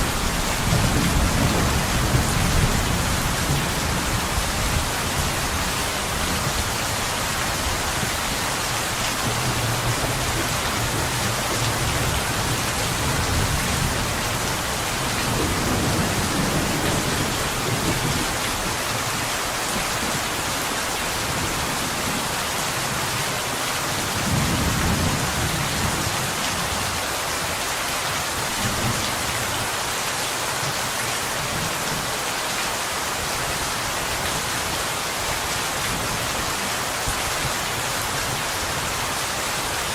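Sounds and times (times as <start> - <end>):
rain on window glass: 7.4 - 23.2.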